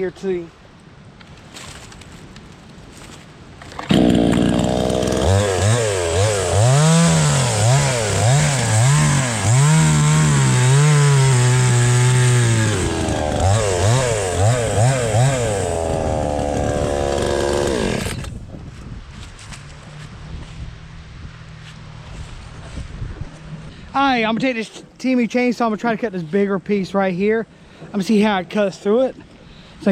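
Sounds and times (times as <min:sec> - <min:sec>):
chainsaw revving cutting log: 0:03.8 - 0:18.3.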